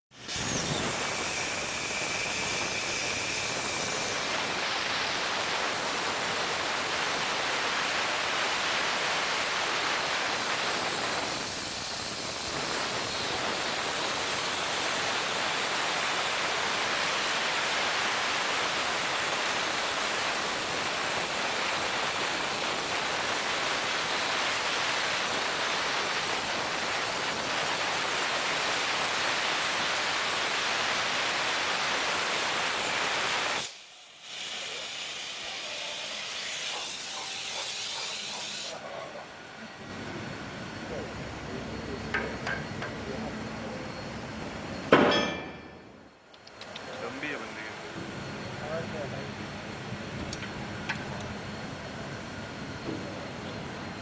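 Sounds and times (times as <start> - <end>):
plasma torch hissing: 0.2 - 38.9.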